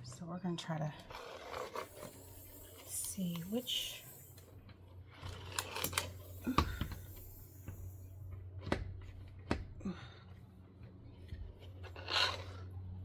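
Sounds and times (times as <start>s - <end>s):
steady low hum: 0.0s - 13.0s
small hardware clicking: 5.3s - 8.0s.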